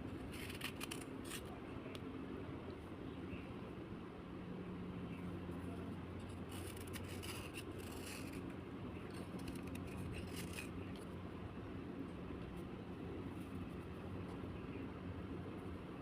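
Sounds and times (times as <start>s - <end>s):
steady low hum: 0.0s - 16.0s
slate scraping: 6.2s - 8.4s, 9.1s - 10.8s.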